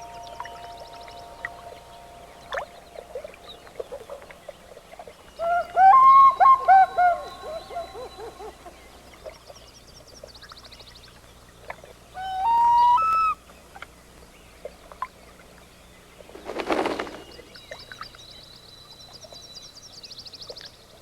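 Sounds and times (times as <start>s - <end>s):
loon tremolo call: 0.0s - 9.3s, 12.2s - 13.4s
loon wail: 5.4s - 8.7s.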